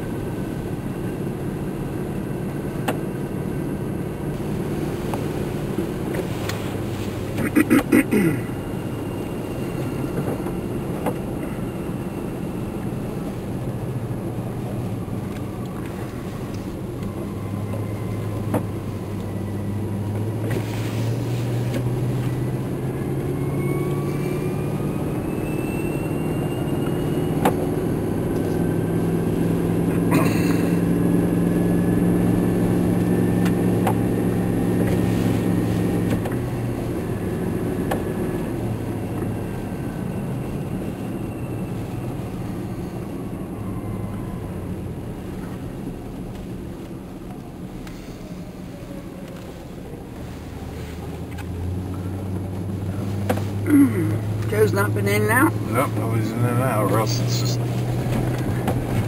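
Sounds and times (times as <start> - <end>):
vehicle engine from inside cab: 0.0 - 59.0.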